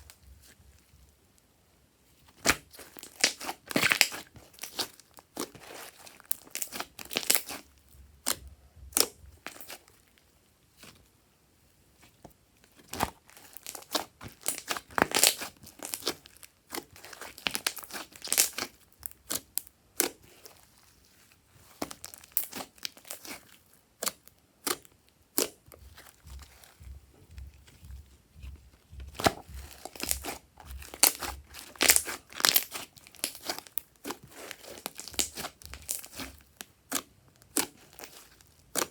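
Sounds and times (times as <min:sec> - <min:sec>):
slime squished by hand: 0:02.3 - 0:09.9, 0:12.8 - 0:20.8, 0:29.0 - 0:38.9.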